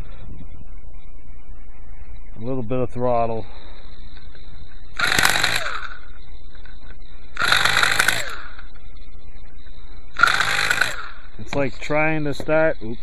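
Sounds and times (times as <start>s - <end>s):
small engine failing to start: 5.0s - 6.1s, 7.4s - 8.6s, 10.2s - 11.3s.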